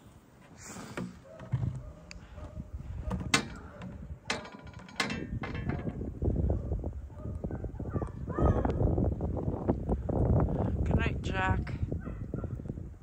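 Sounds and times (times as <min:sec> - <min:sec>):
blizzard wind buffeting microphone: 0:01.8 - 0:04.3, 0:05.2 - 0:13.0.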